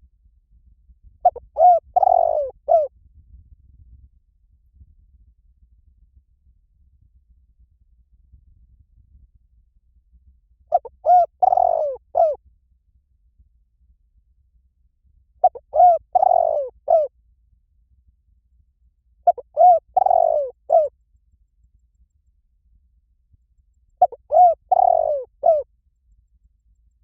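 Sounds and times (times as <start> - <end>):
dove cooing: 1.2 - 2.9, 10.7 - 12.4, 15.4 - 17.1, 19.3 - 20.9, 24.0 - 25.7.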